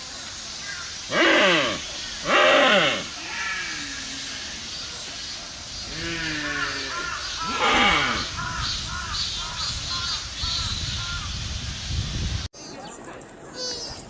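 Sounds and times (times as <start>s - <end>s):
deer calling: 0.6s - 4.8s, 5.8s - 9.2s.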